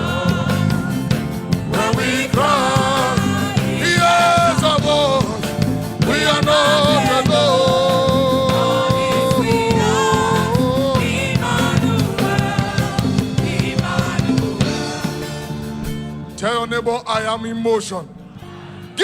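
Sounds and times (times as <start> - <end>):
gospel band with drum kit: 0.0 - 17.2
person singing: 1.7 - 15.2.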